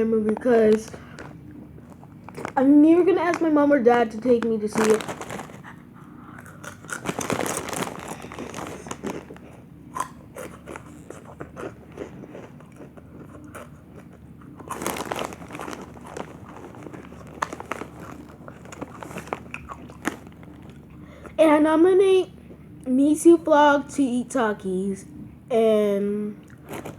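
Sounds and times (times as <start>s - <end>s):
crunching tortilla chips: 0.8s - 2.7s, 4.4s - 20.8s, 26.5s - 26.9s.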